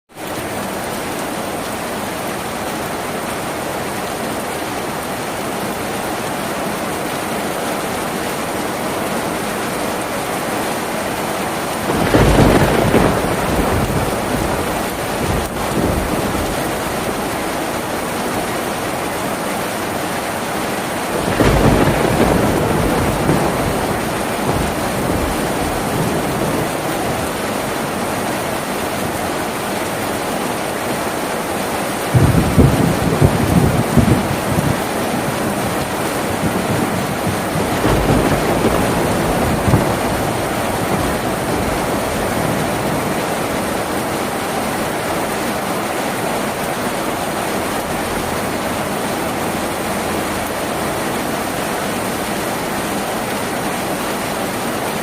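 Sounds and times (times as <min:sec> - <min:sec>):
heavy rain on tin roof: 0:00.1 - 0:55.0
thunder rolling: 0:11.8 - 0:18.2, 0:21.1 - 0:27.9, 0:32.1 - 0:43.9.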